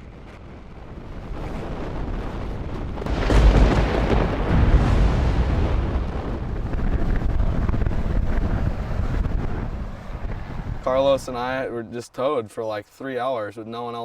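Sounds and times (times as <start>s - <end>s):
ocean wave breaking: 3.0s - 6.7s.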